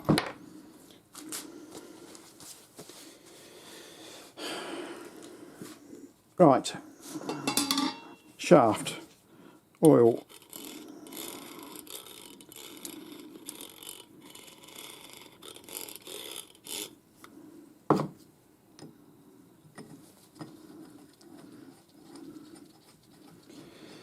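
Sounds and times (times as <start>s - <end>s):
metal parts scraping and rubbing: 10.0s - 17.0s.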